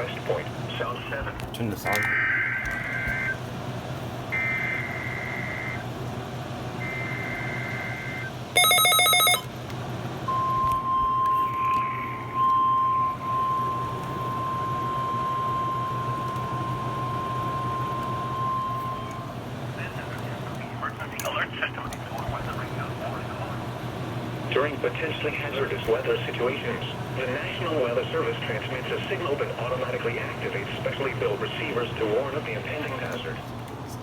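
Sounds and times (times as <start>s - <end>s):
screeching two-tone data bursts: 1.9s - 3.4s, 4.4s - 5.8s, 6.8s - 9.4s
loud buzzy beep: 4.3s - 5.8s, 6.8s - 9.5s, 10.3s - 19.3s.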